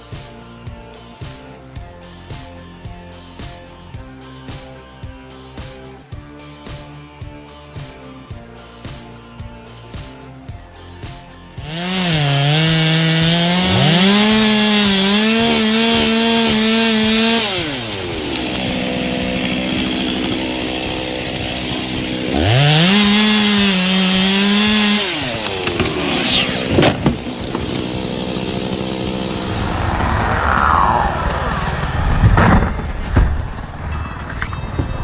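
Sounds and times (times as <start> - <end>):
chainsaw engine revving: 11.1 - 32.9.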